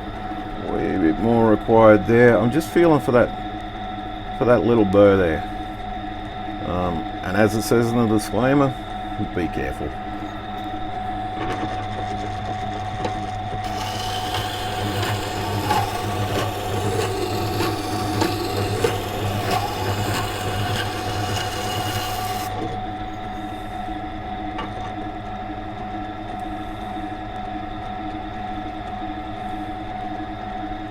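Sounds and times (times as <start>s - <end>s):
grinder motor humming: 10.3s - 23.2s
blade grinding on wet stone: 11.8s - 22.6s.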